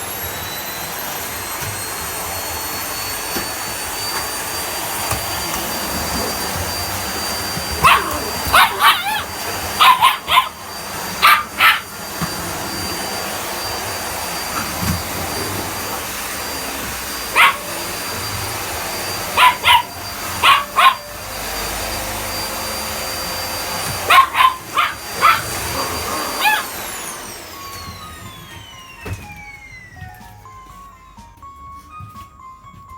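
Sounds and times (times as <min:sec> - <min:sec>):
vacuum cleaner whine: 0:00.0 - 0:32.9
puppy yapping: 0:07.5 - 0:12.0, 0:17.3 - 0:17.8, 0:19.2 - 0:21.1, 0:23.9 - 0:26.9.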